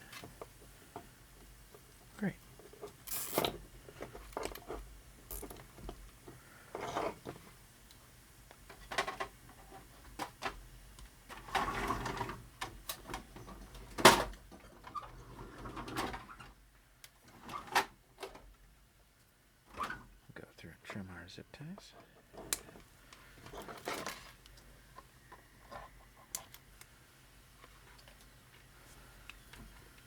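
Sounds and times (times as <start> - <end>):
plastic parts clicking and rustling: 8.5 - 10.6, 21.8 - 26.9.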